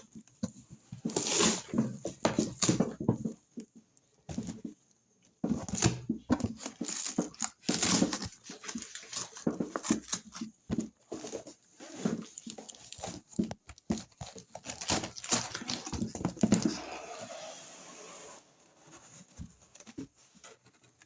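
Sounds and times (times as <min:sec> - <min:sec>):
packaging rustling and crinkling: 0:05.6 - 0:17.6.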